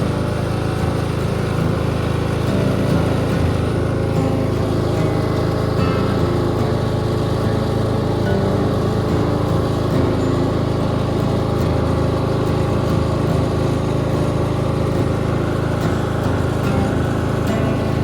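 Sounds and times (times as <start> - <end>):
lawn tractor engine running: 0.0 - 18.0.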